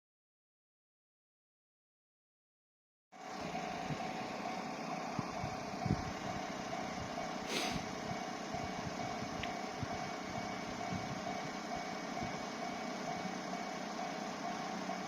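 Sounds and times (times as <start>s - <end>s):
mechanical engine running: 3.2s - 15.0s
short hiss: 7.5s - 7.9s.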